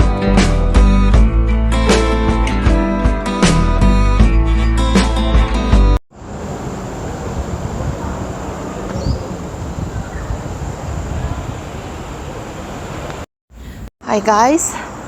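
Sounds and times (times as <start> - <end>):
noisy outdoor wash: 6.1 - 13.3.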